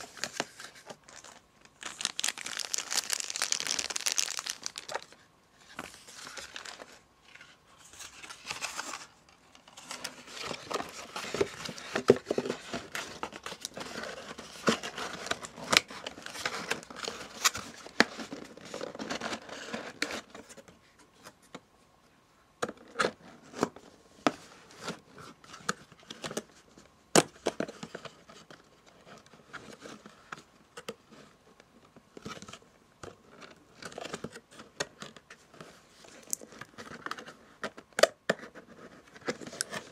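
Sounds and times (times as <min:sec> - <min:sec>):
packaging crinkling and rustling: 0:00.0 - 0:20.6.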